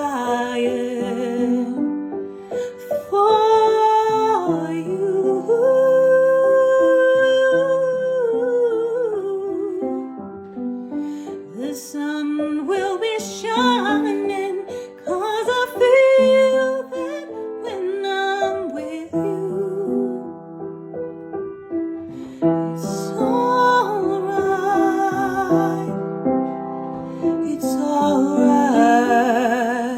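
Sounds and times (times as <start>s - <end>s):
woman singing: 0.0s - 10.5s, 11.2s - 20.8s, 22.0s - 29.9s
piano accompaniment: 0.0s - 29.9s.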